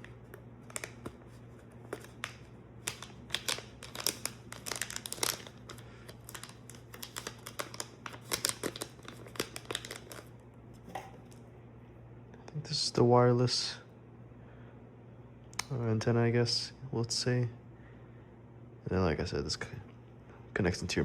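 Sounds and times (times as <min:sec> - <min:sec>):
plastic packaging crinkling: 0:00.0 - 0:10.4.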